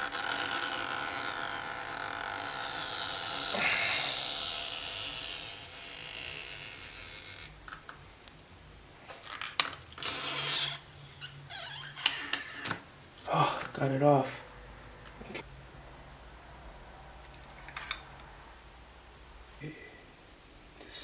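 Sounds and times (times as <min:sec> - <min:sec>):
adhesive strip peeling with squeal: 0:00.0 - 0:07.6, 0:10.0 - 0:12.8.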